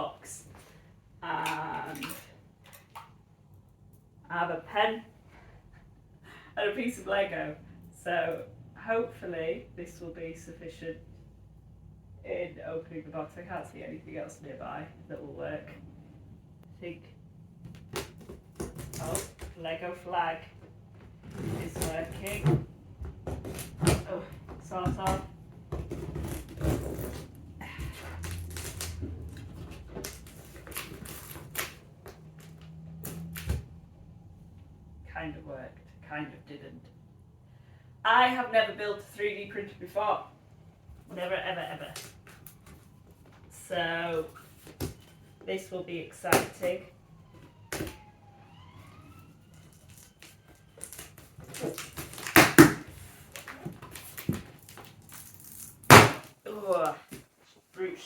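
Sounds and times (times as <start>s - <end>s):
plastic scraping on packing tape: 25.9s - 31.8s, 49.6s - 56.3s.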